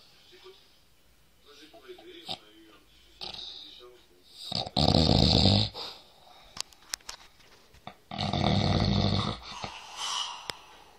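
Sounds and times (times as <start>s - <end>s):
loud snoring: 4.5s - 5.8s, 8.1s - 9.7s.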